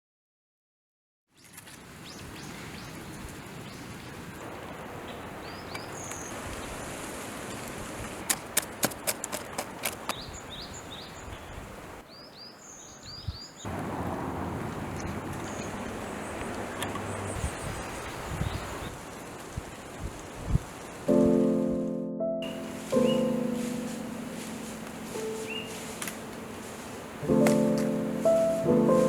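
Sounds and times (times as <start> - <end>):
small birds chirping: 5.0 - 7.0, 9.7 - 13.8, 14.8 - 19.0, 22.4 - 29.0.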